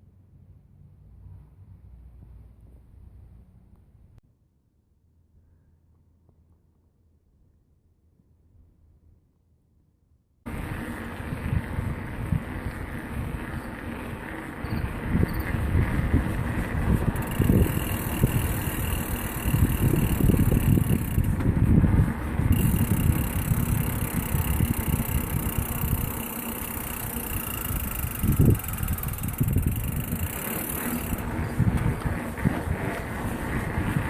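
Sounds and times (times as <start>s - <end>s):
mountain bike rolling: 10.5s - 34.0s
wind buffeting microphone: 10.5s - 34.0s.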